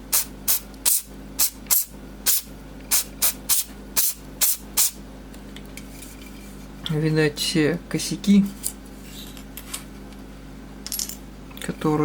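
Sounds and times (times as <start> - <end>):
low electrical hum: 0.0 - 12.0
aerosol spray bursts: 0.1 - 5.0.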